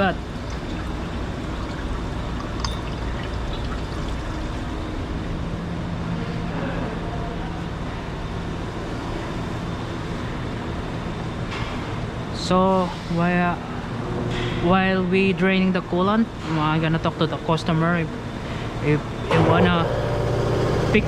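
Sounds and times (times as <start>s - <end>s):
oil pouring into drain pan: 0.0s - 5.0s.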